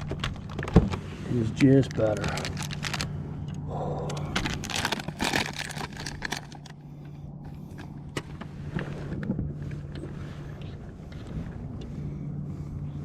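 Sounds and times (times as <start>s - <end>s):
steady low hum: 0.0s - 13.0s
small gear clicking and rattling: 1.6s - 3.1s, 4.1s - 6.8s.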